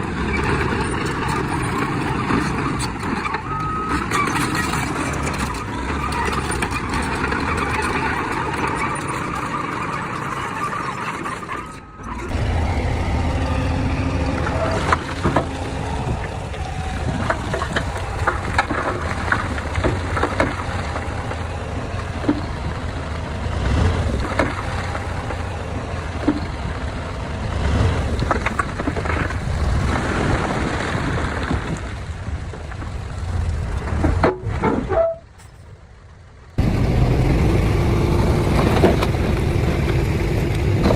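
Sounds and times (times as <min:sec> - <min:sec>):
diesel machinery engine rumble: 0:00.0 - 0:40.9
metallic clanks and knocks: 0:17.1 - 0:22.9.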